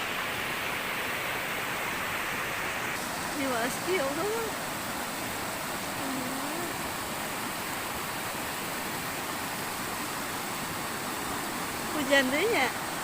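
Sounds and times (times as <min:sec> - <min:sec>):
rain falling: 0:00.0 - 0:13.0.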